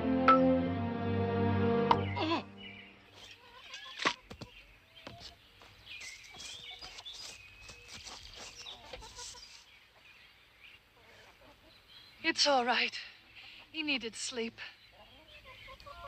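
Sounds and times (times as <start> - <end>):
small birds chirping: 2.0 - 16.0
chickens clucking: 10.8 - 12.0, 14.8 - 16.0.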